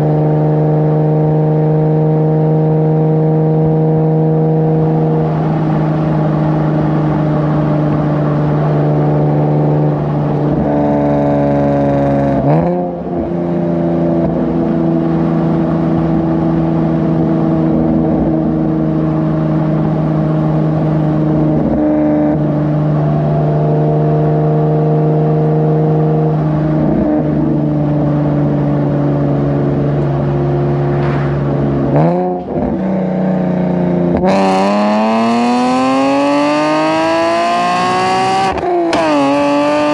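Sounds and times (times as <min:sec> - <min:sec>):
car engine droning at steady revs: 0:00.0 - 0:39.9.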